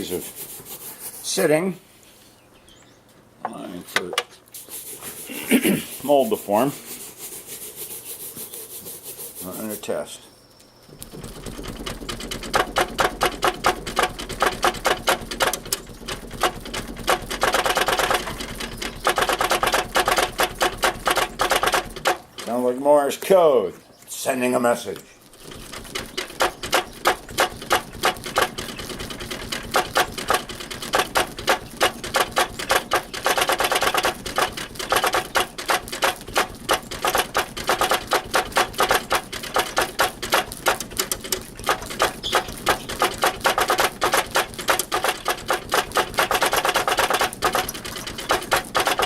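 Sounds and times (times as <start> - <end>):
steady hiss: 4.5 - 10.1
rapid irregular clicking: 10.8 - 23.4, 24.6 - 49.0.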